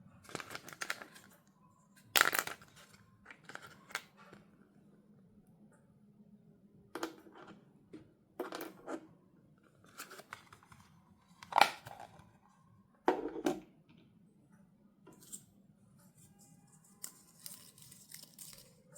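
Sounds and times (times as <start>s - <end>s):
plastic crinkling: 0.2s - 1.4s, 16.2s - 18.9s.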